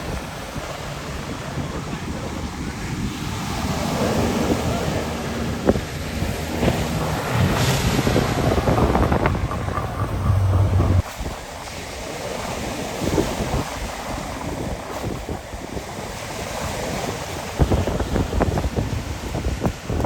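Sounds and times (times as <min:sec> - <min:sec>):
wind buffeting microphone: 0:00.0 - 0:20.0
breaking surf: 0:02.7 - 0:20.0
heavy low rumble: 0:04.6 - 0:11.1.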